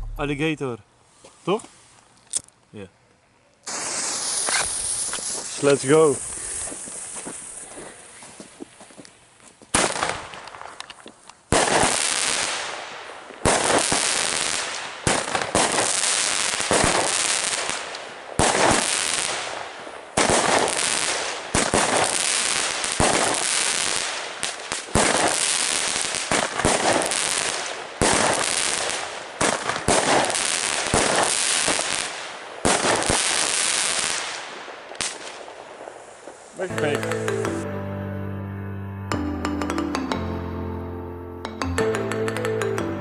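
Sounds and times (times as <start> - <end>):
fireworks cake shots cracking: 13.5 - 19.5, 20.2 - 35.5.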